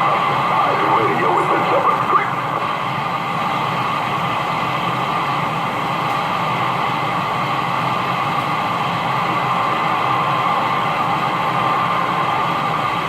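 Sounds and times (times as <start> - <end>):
radio static hiss: 0.0 - 3.3.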